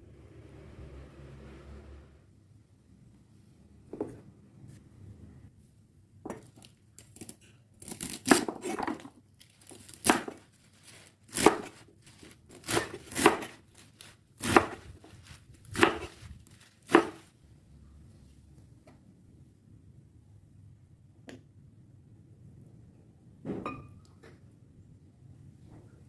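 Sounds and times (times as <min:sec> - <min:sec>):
knife cutting on cutting board: 0:09.8 - 0:17.3.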